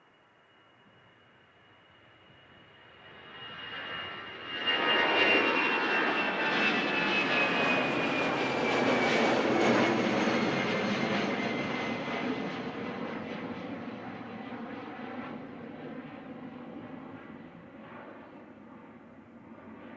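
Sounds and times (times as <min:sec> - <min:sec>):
jet engines roaring past: 0:02.8 - 0:18.6.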